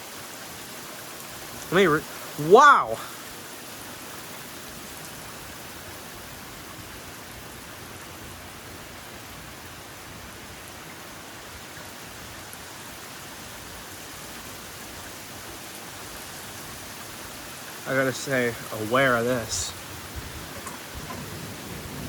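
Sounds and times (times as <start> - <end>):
heavy rain hissing: 0.0 - 22.0.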